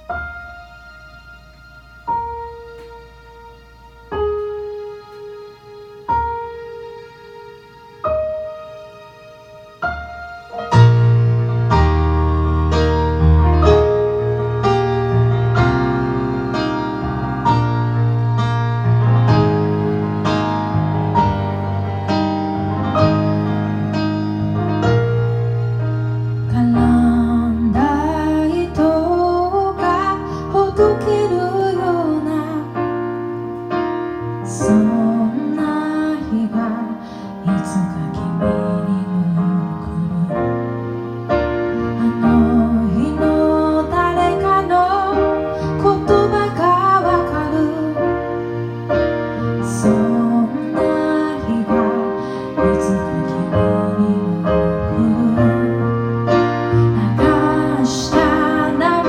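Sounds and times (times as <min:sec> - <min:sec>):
piano accompaniment: 0:00.0 - 0:59.0
woman singing: 0:26.5 - 0:33.0, 0:34.4 - 0:40.6, 0:42.0 - 0:48.3, 0:49.6 - 0:55.9, 0:56.7 - 0:59.0.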